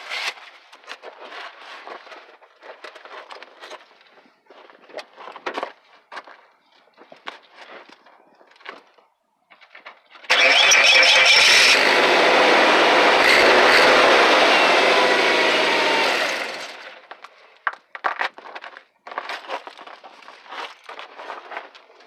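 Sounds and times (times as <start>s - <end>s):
truck engine running: 10.3s - 17.0s.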